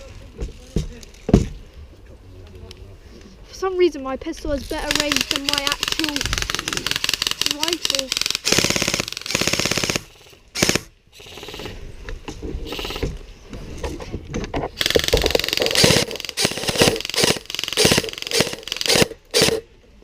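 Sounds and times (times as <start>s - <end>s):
airsoft gun full-auto burst: 4.9s - 11.7s, 14.8s - 19.6s.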